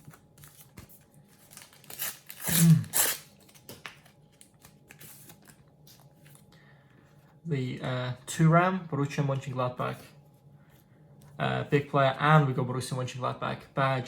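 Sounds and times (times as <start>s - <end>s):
paper crinkling and rustling: 0.0s - 6.5s
wrapper ripping open: 1.4s - 3.8s.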